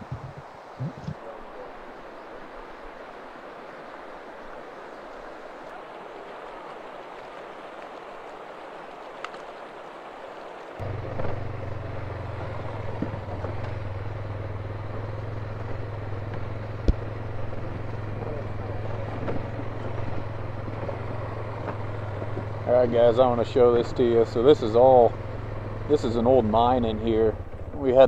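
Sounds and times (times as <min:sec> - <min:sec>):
vehicle engine idling: 0:10.8 - 0:28.0.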